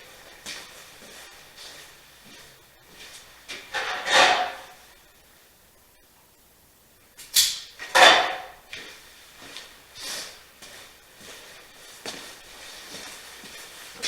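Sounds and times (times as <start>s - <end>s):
wire strippers snapping: 7.2s - 7.9s.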